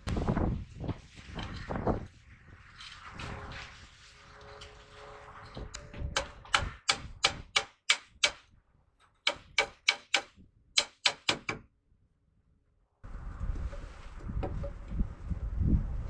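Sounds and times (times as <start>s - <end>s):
wind on microphone: 0.0s - 7.6s, 13.0s - 16.0s.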